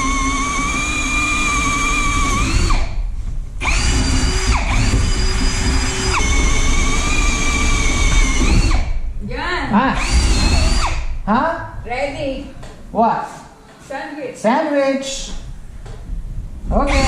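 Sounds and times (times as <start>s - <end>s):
electric drill whining: 0.0s - 3.0s, 3.6s - 9.0s, 10.0s - 11.2s.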